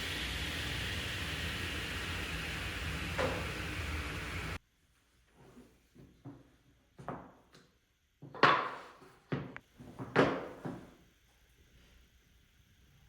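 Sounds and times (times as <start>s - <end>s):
wooden boards knocking and clattering: 8.2s - 10.8s.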